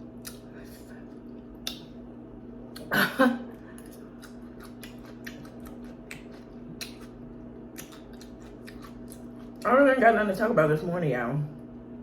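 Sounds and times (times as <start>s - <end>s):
steady low hum: 0.0s - 12.0s
person chewing noodles: 3.5s - 9.6s.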